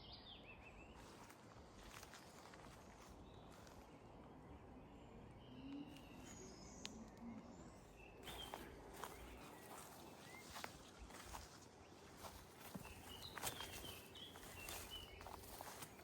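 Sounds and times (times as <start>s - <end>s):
footsteps in undergrowth: 0.8s - 4.3s, 5.9s - 16.0s
faint bird chirps: 4.7s - 11.5s, 12.1s - 16.0s.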